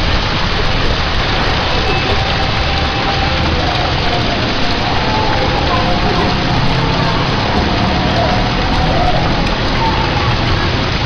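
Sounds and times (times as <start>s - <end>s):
heavy rain falling: 0.0s - 11.0s.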